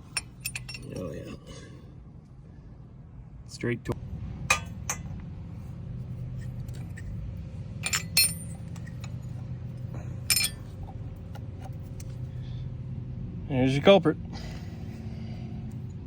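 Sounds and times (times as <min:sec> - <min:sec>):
small metal parts clinking: 0:00.0 - 0:01.2, 0:07.8 - 0:09.4, 0:10.2 - 0:10.8
low steady hum: 0:00.0 - 0:13.4.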